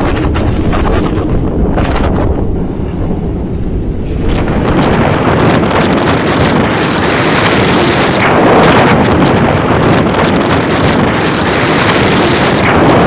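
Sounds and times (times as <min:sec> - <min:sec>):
strong wind buffeting microphone: 0:00.0 - 0:13.0.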